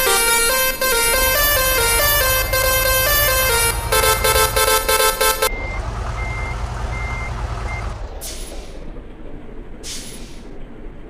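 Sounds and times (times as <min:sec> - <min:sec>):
musical bus horn: 0:00.0 - 0:05.5
low engine rumble: 0:00.0 - 0:11.0
high reversing beeps: 0:01.2 - 0:08.0
air hiss bursts: 0:08.2 - 0:08.8, 0:09.8 - 0:10.5.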